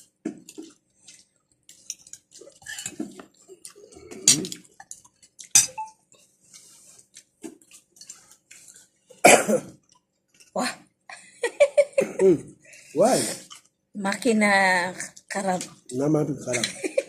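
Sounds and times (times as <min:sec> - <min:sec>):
chewing and mouth noises: 0:00.3 - 0:09.2, 0:09.8 - 0:10.6, 0:13.2 - 0:13.7
utensils clinking on plates: 0:04.1 - 0:06.0, 0:16.5 - 0:17.0.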